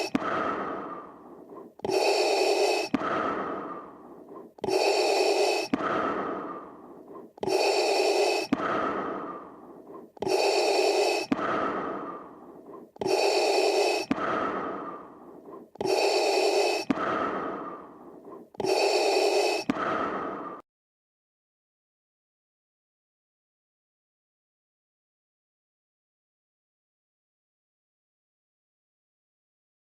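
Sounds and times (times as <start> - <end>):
mechanical respirator breathing: 0.0 - 20.6.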